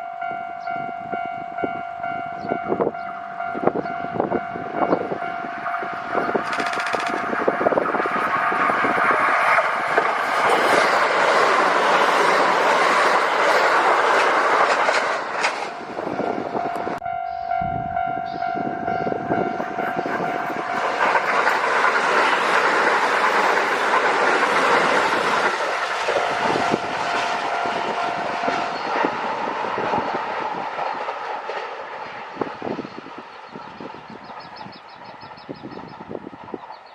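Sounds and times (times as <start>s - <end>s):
train wheels clattering: 6.2s - 15.8s, 19.4s - 32.8s
long steady tone: 15.8s - 20.8s.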